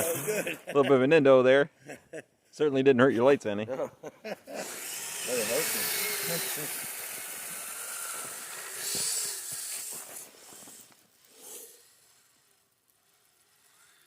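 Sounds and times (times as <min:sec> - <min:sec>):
toy motor and tracks in snow: 0:04.4 - 0:14.0.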